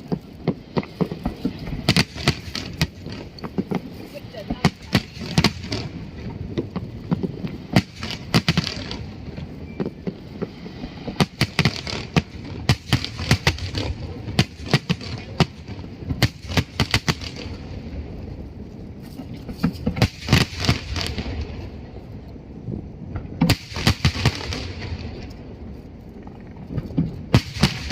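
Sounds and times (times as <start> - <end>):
fireworks bangs and crackles: 0.0 - 27.9
steady low rumble: 0.0 - 27.9.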